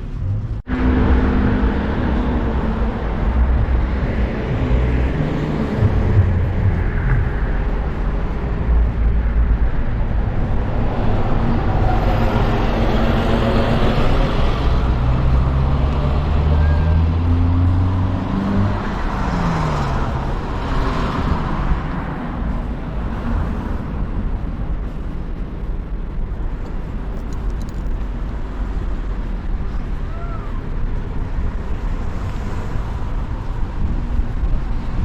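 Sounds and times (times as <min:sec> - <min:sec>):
vehicle passing: 0:00.0 - 0:25.8
traffic rumble: 0:00.0 - 0:35.0.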